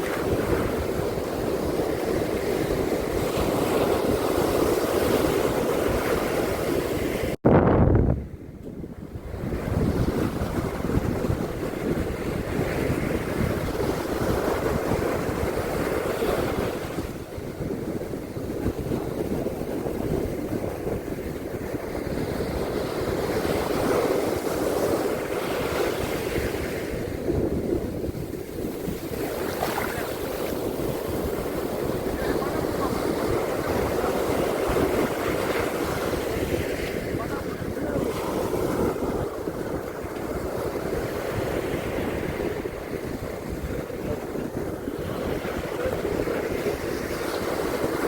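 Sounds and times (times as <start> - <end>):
ocean surf on beach: 0.0 - 48.0
wind buffeting microphone: 0.0 - 48.0.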